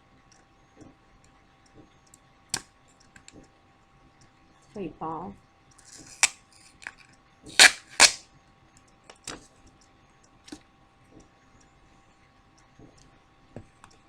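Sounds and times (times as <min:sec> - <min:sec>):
plastic seal peeled off: 0:05.8 - 0:08.2.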